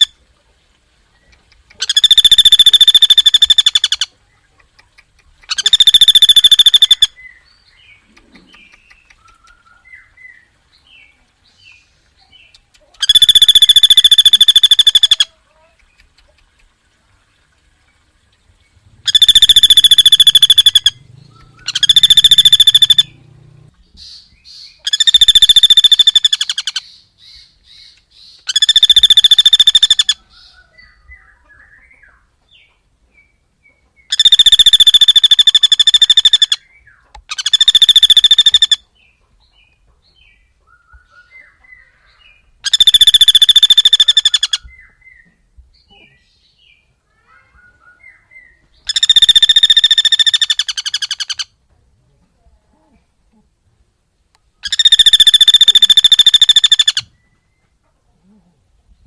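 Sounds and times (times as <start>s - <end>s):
buzzy trilling call: 1.8s - 4.1s, 5.5s - 7.2s, 13.0s - 15.3s, 19.1s - 23.2s, 24.7s - 26.9s, 28.5s - 30.2s, 34.1s - 36.6s, 37.3s - 38.8s, 42.7s - 44.7s, 48.9s - 51.5s, 54.6s - 57.0s.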